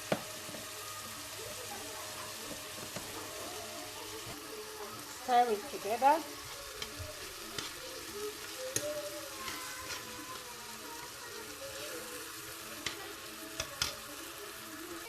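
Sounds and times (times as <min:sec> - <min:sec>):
vegetables sizzling in oil: 0:00.0 - 0:15.0
spoon scraping a pan: 0:02.2 - 0:14.1.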